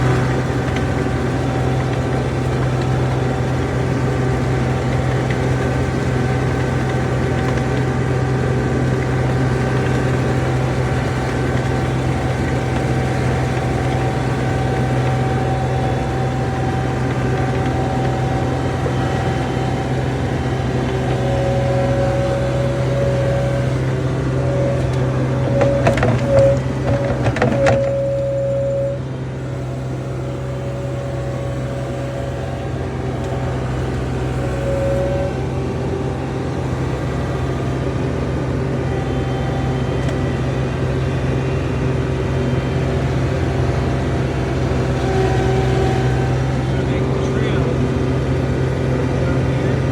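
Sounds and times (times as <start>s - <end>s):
diesel engine running: 0.0s - 49.9s
clanks and rattles: 23.0s - 28.1s.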